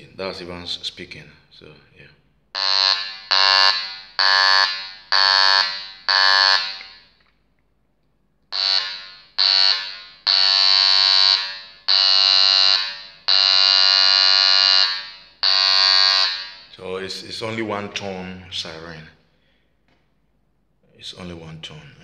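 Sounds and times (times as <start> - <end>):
buzzy electronic siren blasts: 2.5 - 7.2, 8.5 - 17.3.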